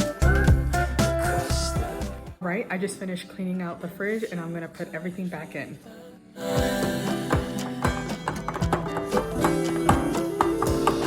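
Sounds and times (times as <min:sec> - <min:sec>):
pop music with steady beat: 0:00.0 - 0:02.5, 0:06.4 - 0:11.0.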